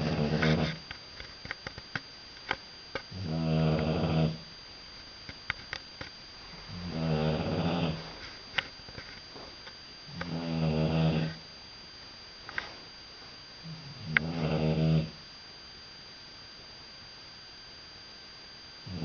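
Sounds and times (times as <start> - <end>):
dog snoring loudly: 0.0 - 0.8, 3.1 - 4.4, 6.7 - 8.2, 10.1 - 11.4, 13.6 - 15.2.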